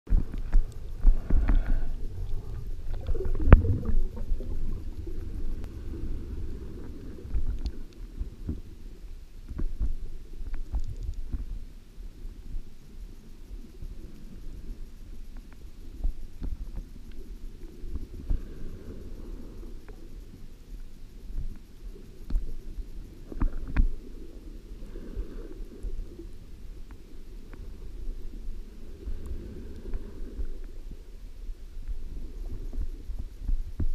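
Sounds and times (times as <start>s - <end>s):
muffled underwater rumble: 0.1s - 33.9s
small clicks: 9.5s - 11.5s.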